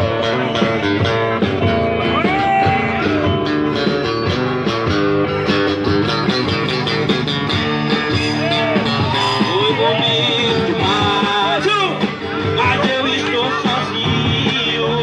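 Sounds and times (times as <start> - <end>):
guitar: 0.0 - 15.0
live band playing: 0.0 - 15.0
person singing: 9.7 - 11.5, 12.4 - 15.0.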